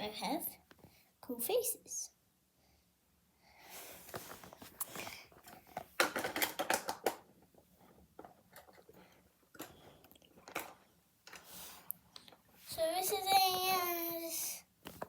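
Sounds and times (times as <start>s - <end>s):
plastic pieces clicking and rattling: 5.5s - 7.3s, 9.5s - 11.4s.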